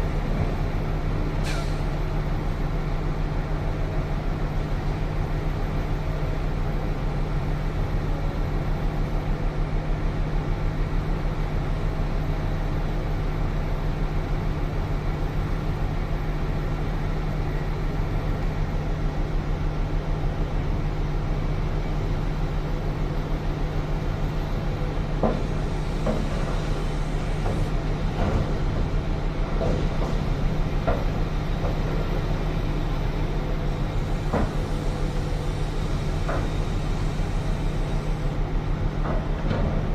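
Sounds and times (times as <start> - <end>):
diesel machinery droning: 21.7 - 39.9.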